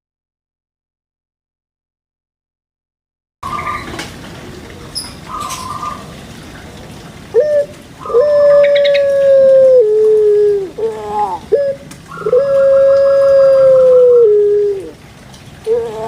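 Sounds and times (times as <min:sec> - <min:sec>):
dove cooing: 0:04.6 - 0:16.0.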